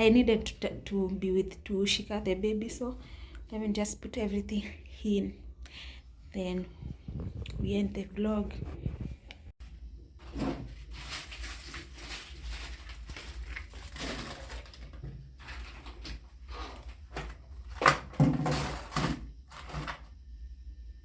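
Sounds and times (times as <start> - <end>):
plastic rustling: 10.1 - 20.1
food containers knocking and clattering: 16.8 - 20.1.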